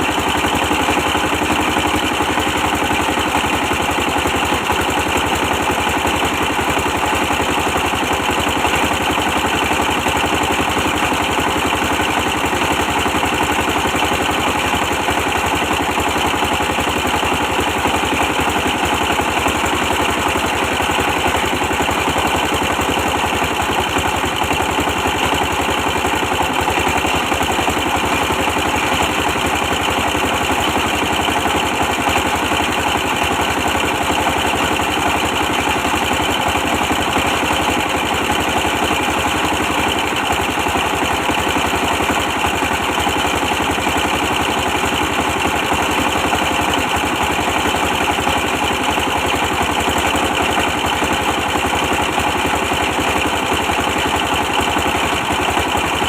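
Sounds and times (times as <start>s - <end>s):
old diesel engine running: 0.0s - 56.0s.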